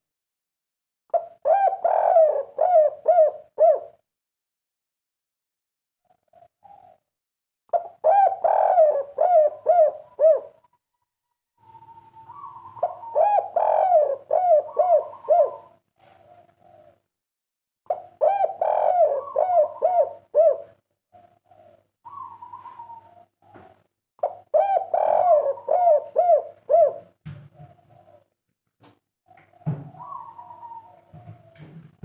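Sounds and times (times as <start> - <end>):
dove cooing: 1.1 - 4.0, 6.0 - 7.1, 7.7 - 10.8, 11.6 - 17.1, 17.9 - 28.3, 29.3 - 32.0.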